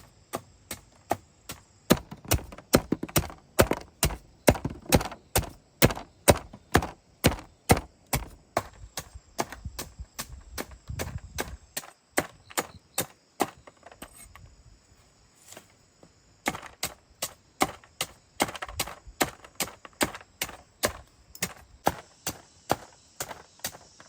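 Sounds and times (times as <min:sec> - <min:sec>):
blade chopping wood: 0:00.0 - 0:14.2, 0:16.4 - 0:24.0.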